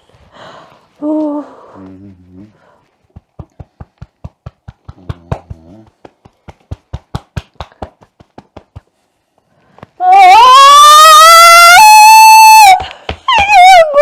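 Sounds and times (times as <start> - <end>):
hands slapping a back: 3.0 - 9.2.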